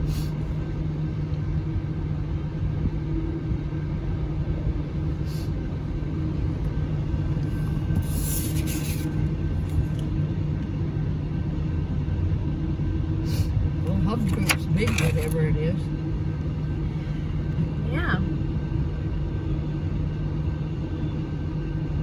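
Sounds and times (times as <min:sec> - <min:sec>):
brief hiss: 0:08.0 - 0:09.2.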